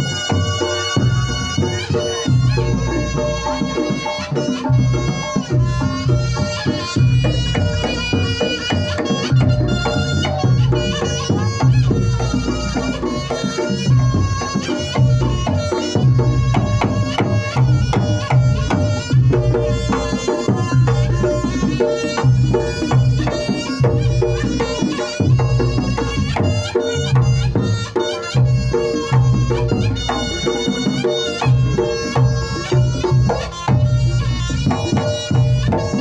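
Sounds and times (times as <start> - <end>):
drums beating driving rhythm: 0.0 - 36.0
gamelan music: 0.0 - 36.0.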